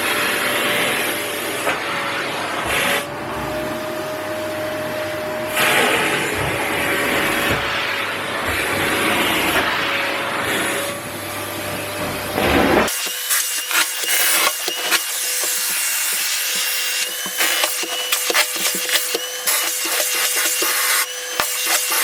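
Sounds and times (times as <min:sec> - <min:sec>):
vacuum cleaner hum and whine: 0:00.0 - 0:22.0
clicks and scraping: 0:12.9 - 0:22.0.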